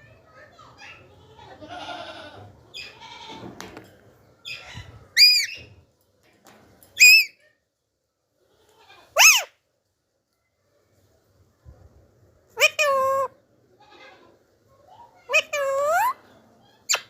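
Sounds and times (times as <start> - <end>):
parakeet shrill screeches: 4.5 - 5.6, 7.0 - 7.4, 9.2 - 9.5
parakeet raspy chatter: 9.2 - 9.5.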